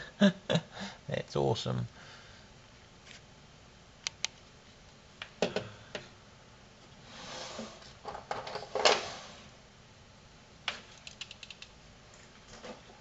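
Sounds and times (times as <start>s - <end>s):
soft scraping rustle: 7.0s - 8.0s, 8.7s - 9.6s
small clicks and taps in mechanism: 10.7s - 11.7s.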